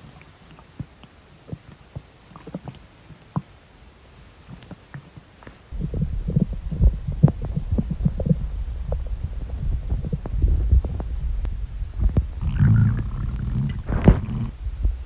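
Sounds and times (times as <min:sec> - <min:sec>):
hissing rustle: 0:01.6 - 0:15.0
stomach gurgling and rumbling: 0:05.7 - 0:15.0.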